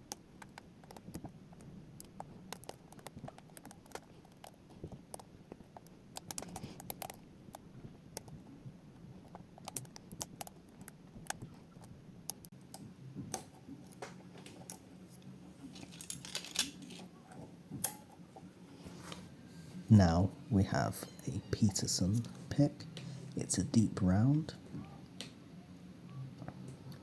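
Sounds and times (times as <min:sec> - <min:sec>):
lock picks clicking and tapping: 0:09.2 - 0:13.5.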